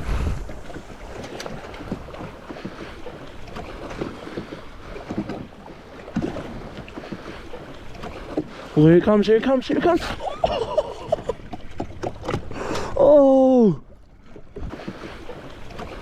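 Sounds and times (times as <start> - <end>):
wind buffeting microphone: 0.0 - 8.7
water slapping a hull: 0.0 - 16.0.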